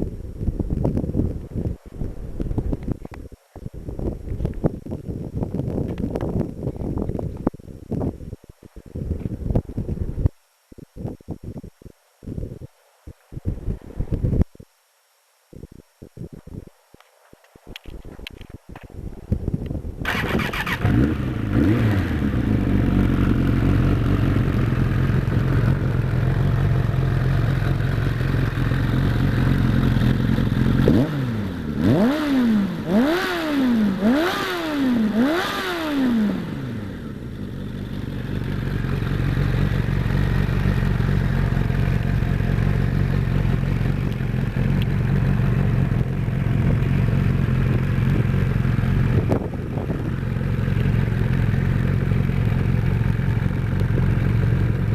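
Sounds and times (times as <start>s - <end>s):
motorcycle engine starting and idling: 20.0s - 54.9s
engine revving: 20.1s - 25.8s, 28.8s - 38.5s.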